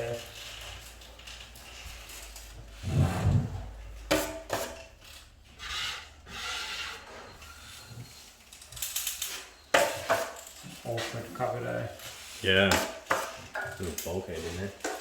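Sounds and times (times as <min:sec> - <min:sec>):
hand tools scraping plaster: 0:01.7 - 0:04.9, 0:05.5 - 0:08.4, 0:09.3 - 0:15.0.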